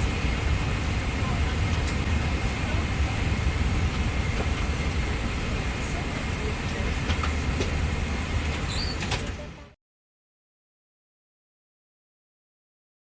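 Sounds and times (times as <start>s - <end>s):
vehicle rumble from inside: 0.0s - 9.8s.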